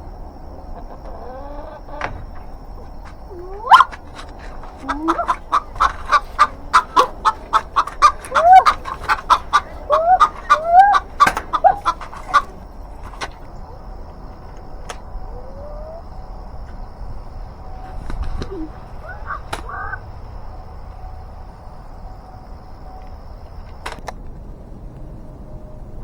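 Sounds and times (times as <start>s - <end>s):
chickens clucking: 0.0s - 24.0s
chicken squawks: 0.5s - 20.7s.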